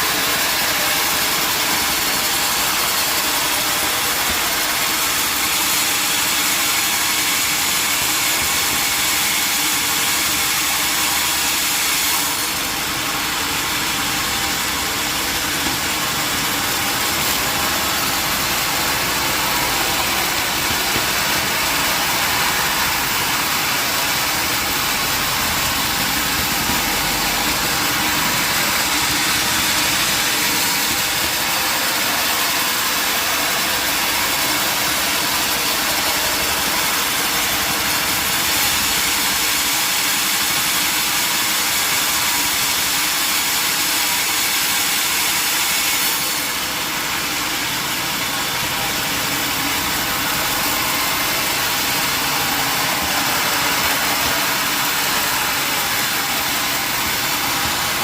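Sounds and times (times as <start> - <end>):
sawmill machinery running: 0.0 - 58.0.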